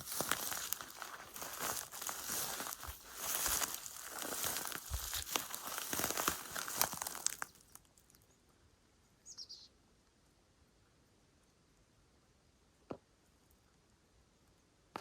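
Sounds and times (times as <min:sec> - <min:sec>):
crinkling rustling noise: 0:00.0 - 0:08.1.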